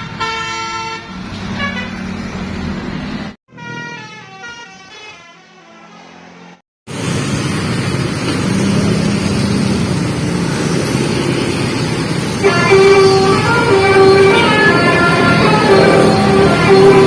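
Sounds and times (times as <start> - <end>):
multi-note bus horn tune: 0.0 - 2.1, 3.5 - 6.5, 12.4 - 17.0
bus engine: 0.0 - 17.0
road noise: 0.0 - 17.0.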